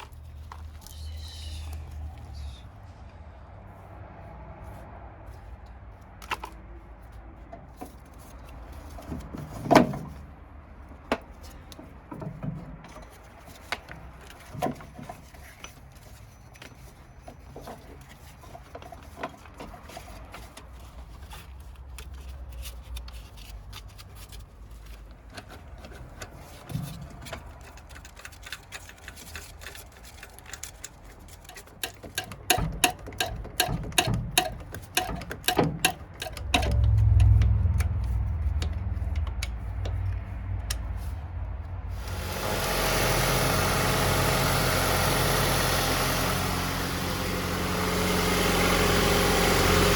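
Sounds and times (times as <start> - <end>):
hand tools clicking on metal: 27.3 - 40.9.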